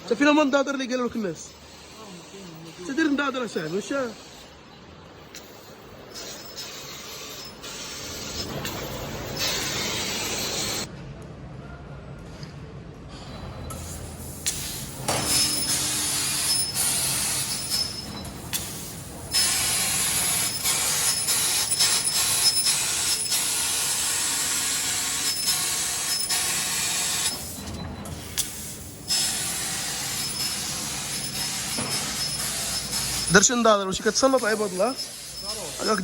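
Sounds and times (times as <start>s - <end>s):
machine running with steady hiss: 5.4s - 10.9s, 13.7s - 36.0s.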